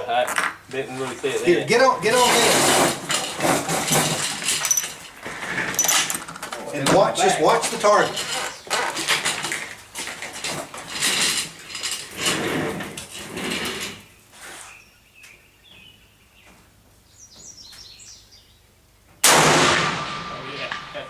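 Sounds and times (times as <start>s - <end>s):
rustling and clattering handling: 0.2s - 14.7s
rifle shot: 19.2s - 21.0s.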